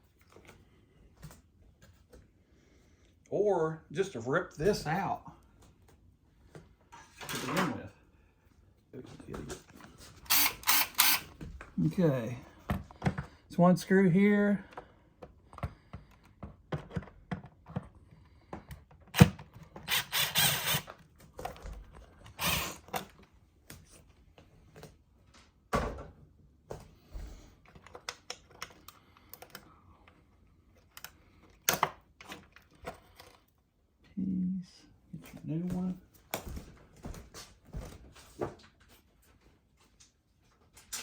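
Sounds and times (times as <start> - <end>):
screwdriver scraping plastic: 10.2 - 11.3, 19.1 - 21.0, 22.3 - 23.1.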